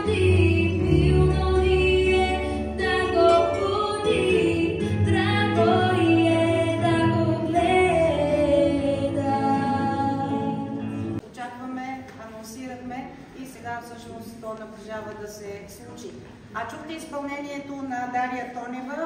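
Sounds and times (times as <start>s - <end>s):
girl singing: 0.0s - 10.8s
instrumental backing music: 0.0s - 11.2s.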